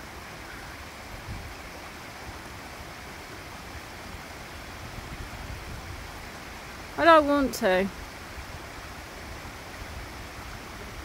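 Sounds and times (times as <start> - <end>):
waterfall rushing: 0.0 - 11.0.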